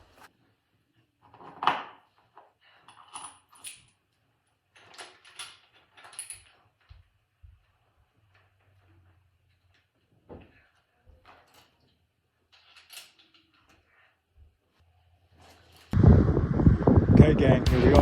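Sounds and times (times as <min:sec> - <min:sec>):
metal parts jangling: 0:02.7 - 0:04.1, 0:04.7 - 0:06.9, 0:12.5 - 0:13.9.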